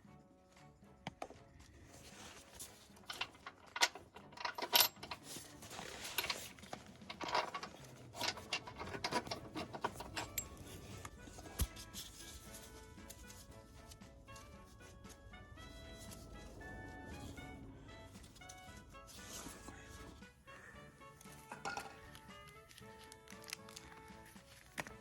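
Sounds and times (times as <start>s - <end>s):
metal tools clinking: 2.3s - 11.6s, 21.4s - 22.1s.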